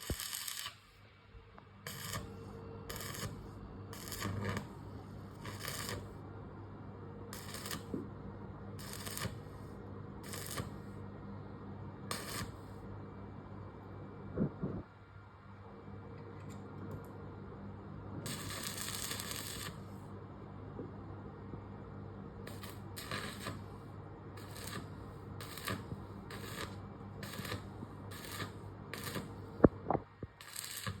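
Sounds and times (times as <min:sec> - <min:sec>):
arc welding crackle: 0:00.0 - 0:01.0, 0:01.6 - 0:06.2, 0:07.3 - 0:08.1, 0:08.7 - 0:11.0, 0:12.1 - 0:12.8, 0:18.2 - 0:20.0, 0:22.4 - 0:31.0
steady low hum: 0:00.0 - 0:31.0.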